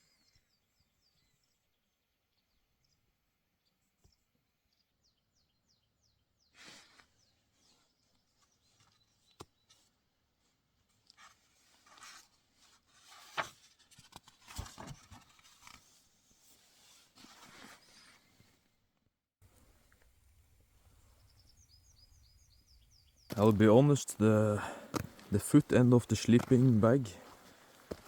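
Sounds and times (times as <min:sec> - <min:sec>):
faint rustling and handling: 0:06.8 - 0:18.7, 0:23.3 - 0:28.0.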